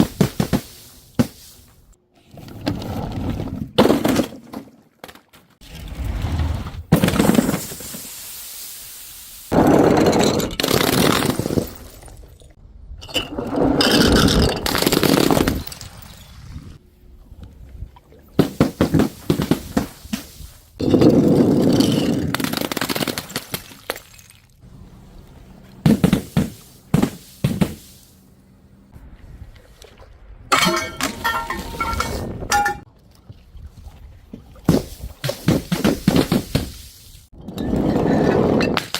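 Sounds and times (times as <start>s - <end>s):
glass breaking: 30.5s - 32.9s.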